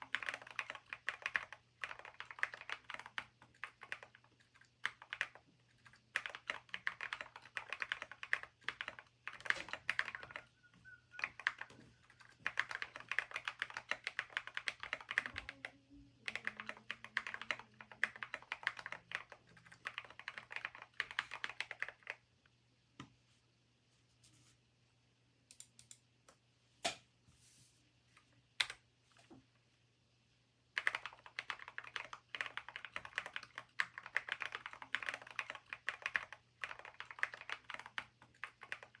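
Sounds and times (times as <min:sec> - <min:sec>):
mechanical keyboard typing: 0:00.0 - 0:10.5, 0:11.2 - 0:22.2, 0:30.8 - 0:39.0.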